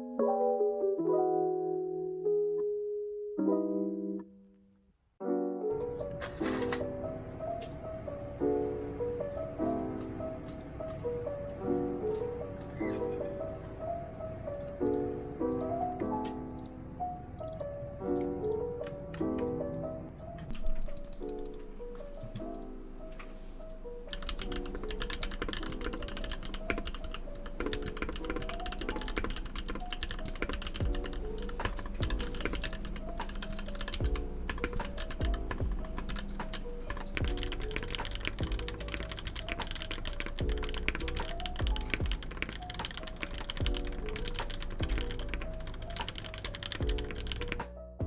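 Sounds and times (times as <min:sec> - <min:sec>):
background music: 0:00.0 - 0:48.0
mechanical keyboard typing: 0:20.5 - 0:22.7, 0:24.0 - 0:47.6.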